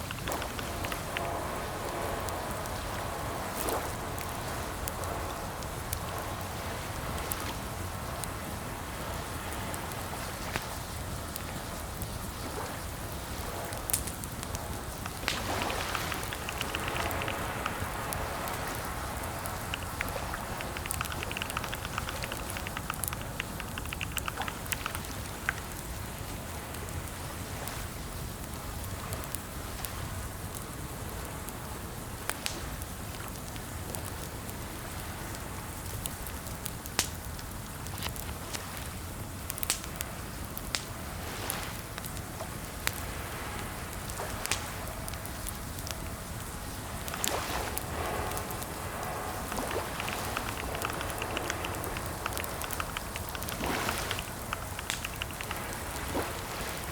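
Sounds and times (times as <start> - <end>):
steady background hiss: 0.0 - 56.9
keyboard key clicks: 15.1 - 17.9, 19.4 - 25.1, 49.5 - 55.7.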